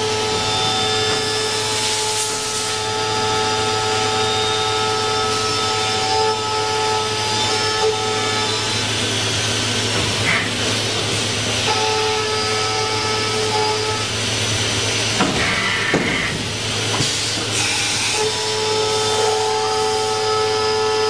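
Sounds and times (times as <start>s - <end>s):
cnc machine running: 0.0s - 21.0s.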